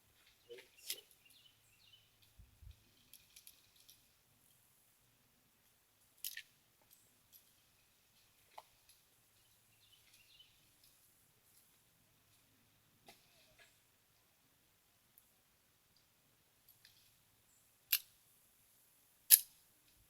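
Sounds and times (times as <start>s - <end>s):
faint clicks and rustles: 2.1s - 4.7s, 5.6s - 14.3s.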